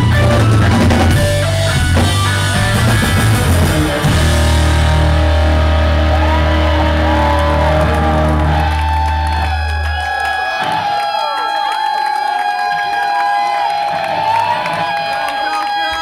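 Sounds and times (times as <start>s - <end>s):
loud distorted rock band: 0.0s - 11.0s.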